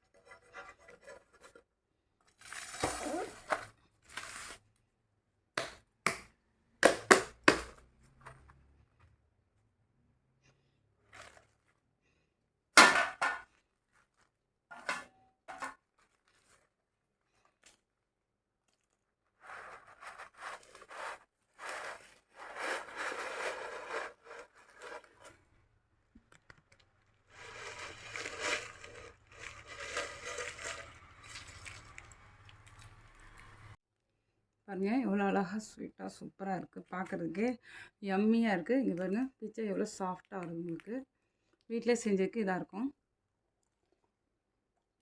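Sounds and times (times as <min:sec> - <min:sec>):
utensil scraping and rustling: 0:00.0 - 0:01.7, 0:18.8 - 0:25.5, 0:27.3 - 0:33.7.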